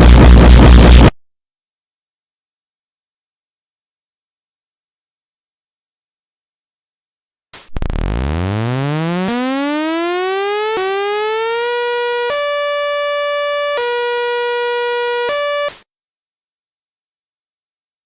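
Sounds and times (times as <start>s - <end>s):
electronic siren winding up: 7.6s - 15.8s.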